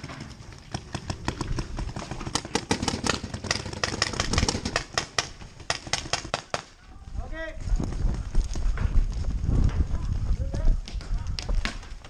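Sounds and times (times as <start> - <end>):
rapid clatter of clicks and knocks: 0.0 - 6.4.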